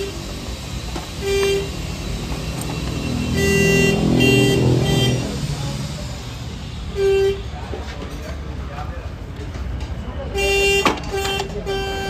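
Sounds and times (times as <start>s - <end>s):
vehicle horns honking: 0.0s - 0.2s, 1.1s - 5.6s, 6.8s - 7.9s, 10.2s - 12.0s
low engine rumble: 0.0s - 12.0s.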